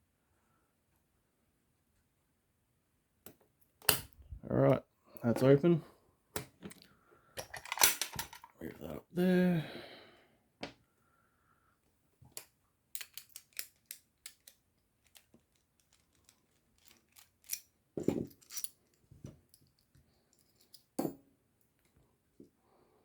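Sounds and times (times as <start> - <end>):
metallic clicks of padlock: 12.4 - 17.7.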